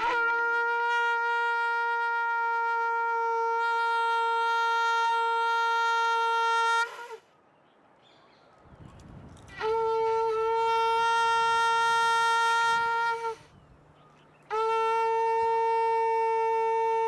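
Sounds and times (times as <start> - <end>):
conch shell blown: 0.0 - 7.3, 9.5 - 13.6, 14.5 - 17.0.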